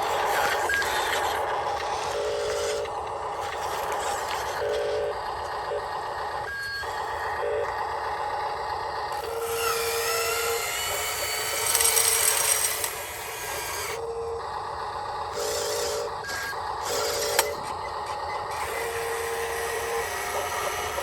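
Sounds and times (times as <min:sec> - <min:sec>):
scraping grinding noise: 0:00.0 - 0:05.0, 0:10.9 - 0:13.9
toy electric motors whirring: 0:00.0 - 0:05.1, 0:09.1 - 0:14.0, 0:15.3 - 0:21.0.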